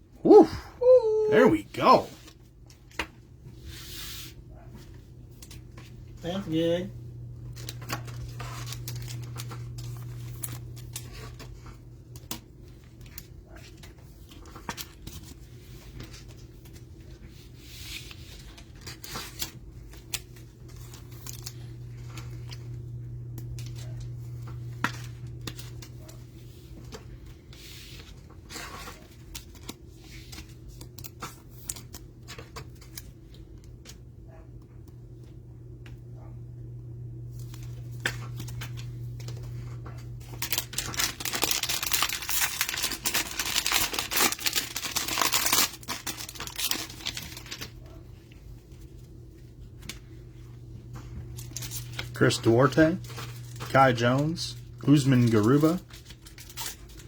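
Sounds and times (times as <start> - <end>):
steady low hum: 5.8 - 11.1, 20.8 - 27.5, 34.4 - 44.6, 48.3 - 56.4
cardboard tearing and rustling: 40.2 - 47.8, 54.9 - 57.0.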